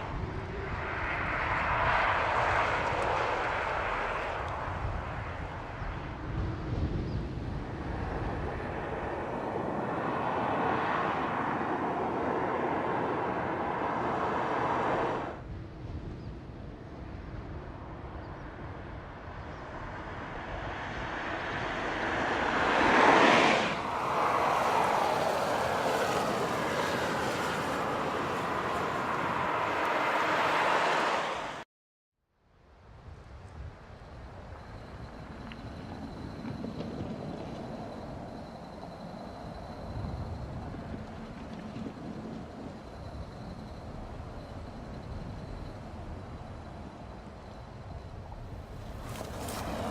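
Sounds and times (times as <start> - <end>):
car passing by: 0.0 - 6.6, 7.4 - 15.4, 19.2 - 31.6, 48.4 - 49.9
car engine: 7.9 - 15.4.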